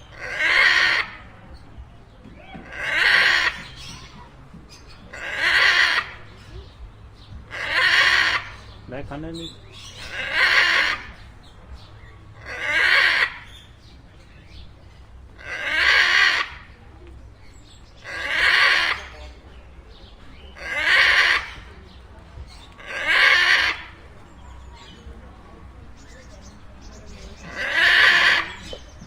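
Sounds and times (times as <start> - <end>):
parakeet calling loudly: 0.0 - 1.3, 2.6 - 4.2, 5.1 - 6.5, 7.5 - 11.4, 12.4 - 13.8, 15.4 - 16.8, 17.9 - 19.2, 20.6 - 21.7, 22.5 - 25.0, 27.4 - 28.9.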